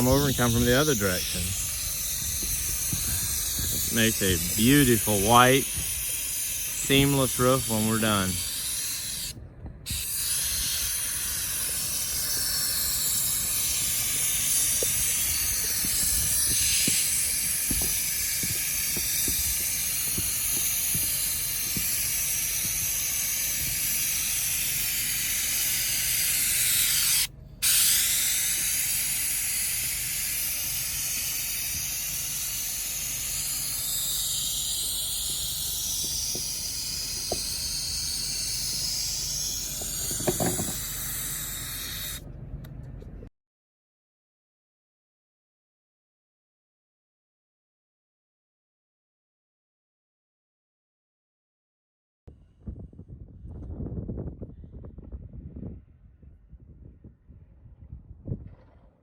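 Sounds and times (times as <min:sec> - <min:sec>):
spray gun hissing: 0:00.0 - 0:42.2.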